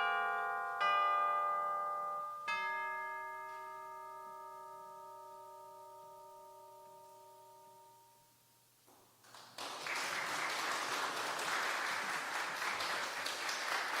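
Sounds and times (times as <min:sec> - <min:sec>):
sustained bell chord: 0:00.0 - 0:08.4
audience applause: 0:09.2 - 0:14.0.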